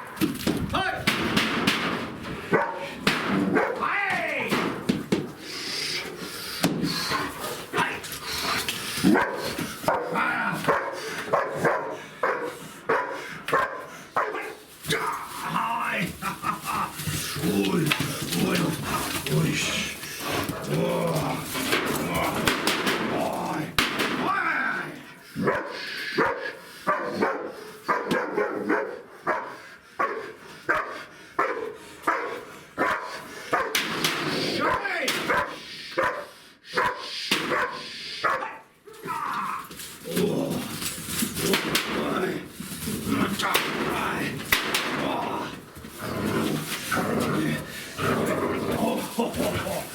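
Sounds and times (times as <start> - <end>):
dog barking: 2.5 - 3.8, 9.0 - 14.6, 25.4 - 33.9, 34.6 - 38.6.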